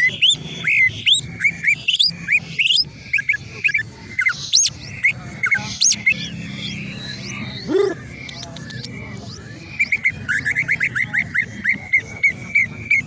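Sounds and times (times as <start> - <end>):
bird singing whistled notes: 0.0 - 8.9.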